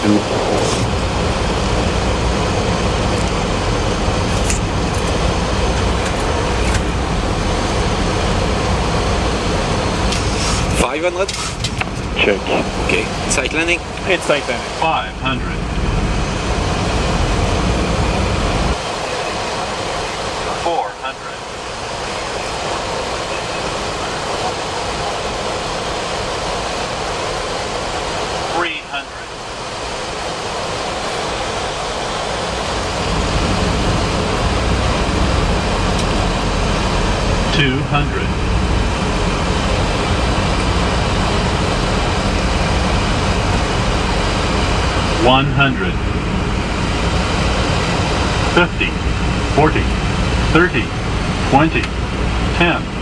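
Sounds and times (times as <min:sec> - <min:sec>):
airflow rushing: 0:00.0 - 0:13.7
airflow and engine noise: 0:00.0 - 0:53.0.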